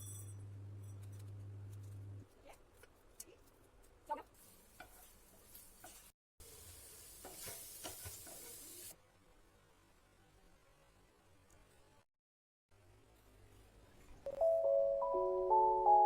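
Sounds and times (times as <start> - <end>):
food sizzling in a pan: 4.2 - 9.0.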